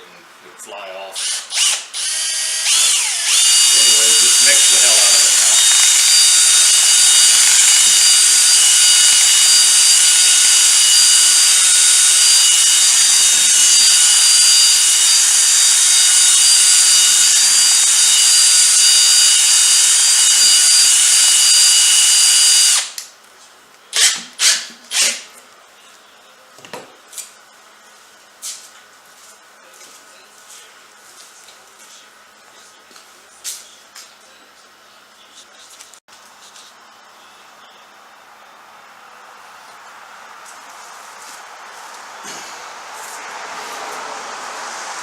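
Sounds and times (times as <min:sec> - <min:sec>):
power drill whining: 0:01.2 - 0:23.0, 0:24.0 - 0:25.3.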